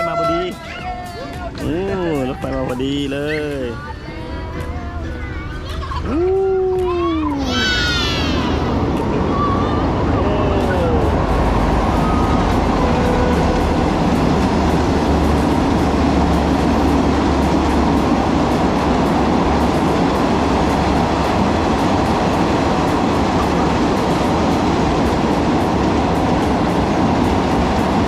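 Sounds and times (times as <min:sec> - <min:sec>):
train wheels rumbling on rails: 0:05.7 - 0:28.0.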